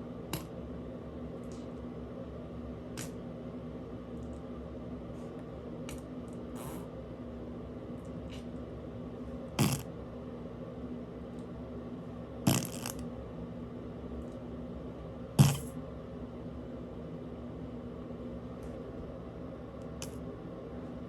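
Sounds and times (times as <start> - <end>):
low background hum: 0.0 - 21.0
farts: 6.6 - 6.9, 9.6 - 9.9, 12.5 - 13.0, 15.4 - 15.7.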